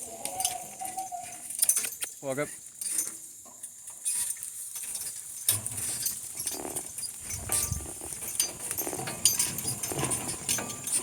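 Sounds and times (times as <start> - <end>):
donkey hooves: 0.0 - 11.0
harness rattling: 4.8 - 11.0
wagon knocking: 5.6 - 11.0.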